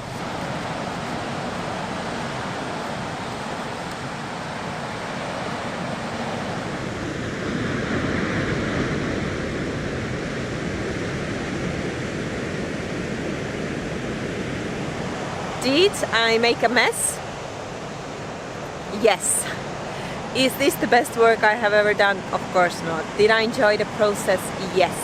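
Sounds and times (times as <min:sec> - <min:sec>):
ocean waves breaking: 0:00.0 - 0:25.0.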